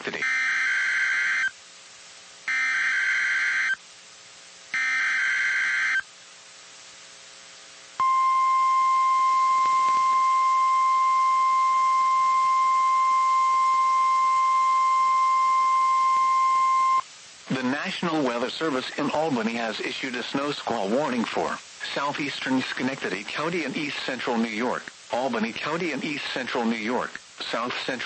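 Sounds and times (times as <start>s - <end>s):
steady warning alarm tone: 0.2s - 1.5s, 2.5s - 3.8s, 4.8s - 6.0s, 8.0s - 17.0s.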